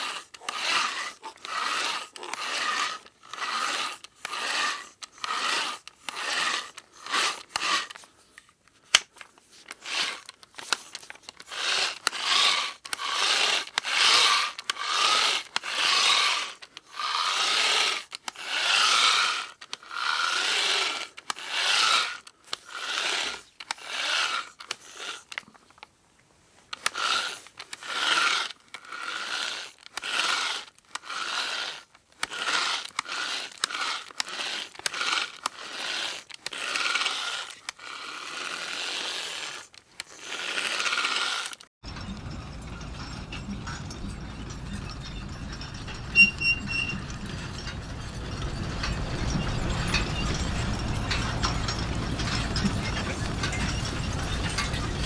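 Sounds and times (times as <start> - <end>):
hand tool rasping strokes: 28.9 - 55.0
quiet steady hum: 41.9 - 55.0.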